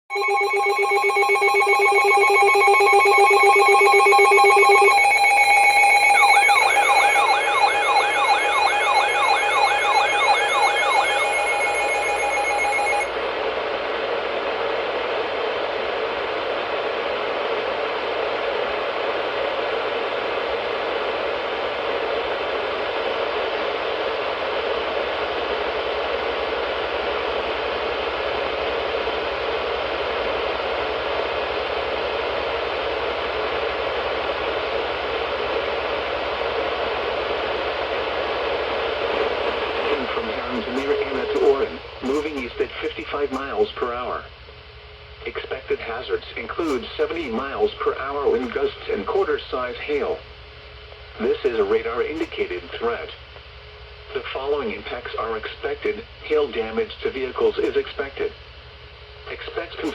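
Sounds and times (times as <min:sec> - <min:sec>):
fast warbling electronic sweep: 0:00.1 - 0:13.0
steady electronic alert tones: 0:00.1 - 0:13.1, 0:39.9 - 0:43.4
radio static hiss: 0:37.8 - 0:50.3, 0:51.0 - 0:53.2, 0:54.0 - 0:58.4, 0:59.2 - 0:59.9.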